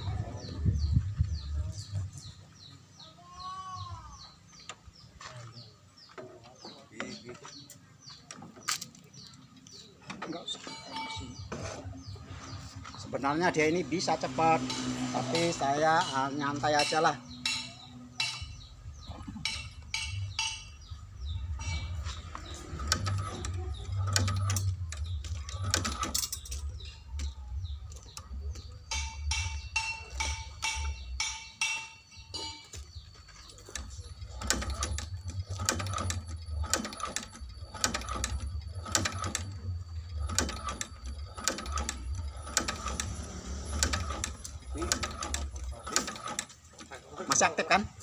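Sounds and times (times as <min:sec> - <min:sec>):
stitching machine motor hum: 0:18.9 - 0:31.3, 0:33.2 - 0:47.9
clicking stitch strokes: 0:33.5 - 0:47.5.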